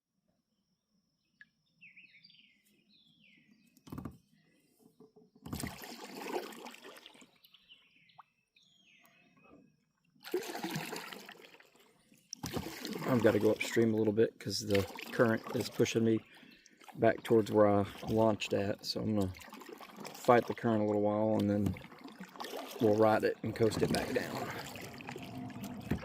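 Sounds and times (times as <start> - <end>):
bird singing: 1.2 - 5.4, 7.3 - 9.9, 13.2 - 19.4
paddle splashing through water: 5.5 - 7.4, 10.2 - 26.0.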